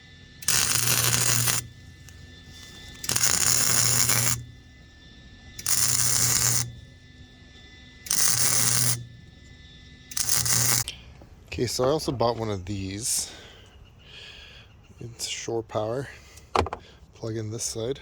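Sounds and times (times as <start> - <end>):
welding crackling with low hum: 0.0 - 4.8, 5.6 - 7.0, 8.1 - 9.3, 10.1 - 11.0.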